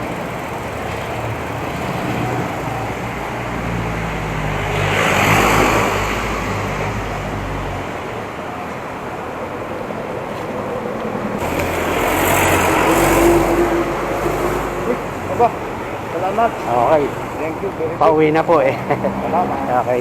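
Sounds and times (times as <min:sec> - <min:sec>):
vehicle passing close: 0:00.0 - 0:08.6, 0:09.7 - 0:20.0
steady road noise: 0:00.0 - 0:20.0
vehicle engine hum: 0:00.0 - 0:20.0.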